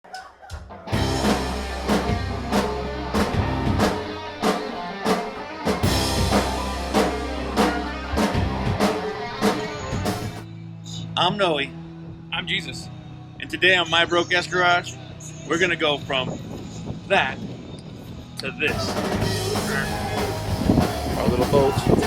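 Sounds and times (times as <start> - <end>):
band music with drum beat: 0.5 - 10.4, 18.7 - 22.0.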